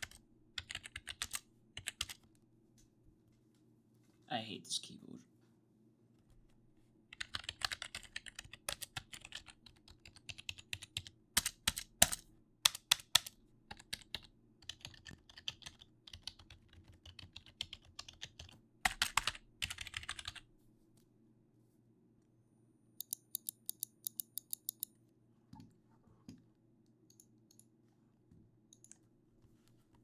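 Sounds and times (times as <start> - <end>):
keyboard typing: 0.0 - 2.2, 7.1 - 20.4, 23.0 - 24.9.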